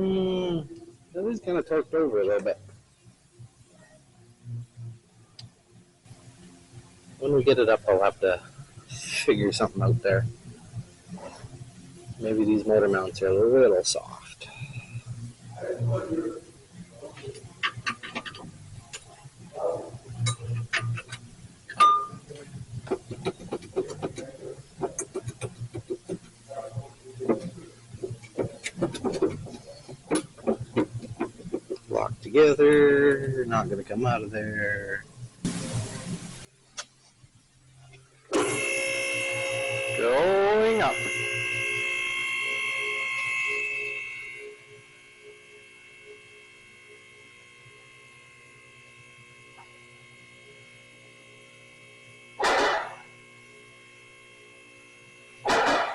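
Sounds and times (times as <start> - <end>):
steady low hum: 0.0 - 55.9
hydraulic pump motor humming: 38.3 - 55.9.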